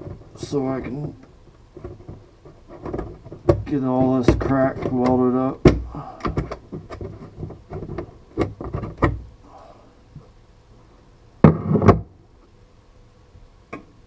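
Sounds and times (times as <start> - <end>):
loud thumps: 1.8 - 9.3, 11.4 - 12.1.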